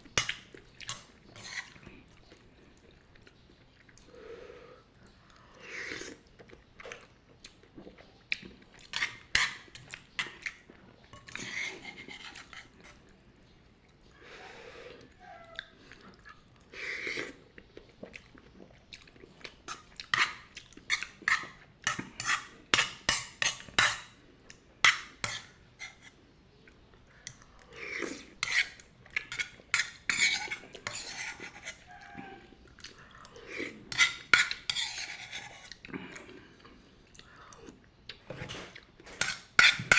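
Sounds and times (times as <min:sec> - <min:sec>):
chewing: 0:00.2 - 0:04.2, 0:04.9 - 0:23.7, 0:24.4 - 0:39.9
metal utensil scraping a wok: 0:11.2 - 0:12.7, 0:28.4 - 0:31.8, 0:33.9 - 0:35.7.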